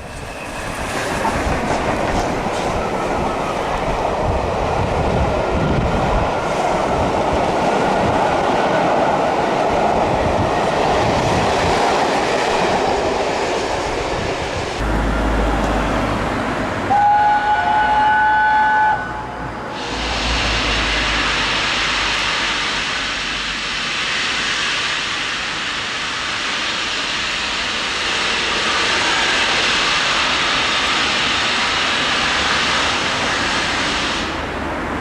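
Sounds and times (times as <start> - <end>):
train running over rails: 0.0 - 35.0
steam locomotive whistle: 16.9 - 22.2.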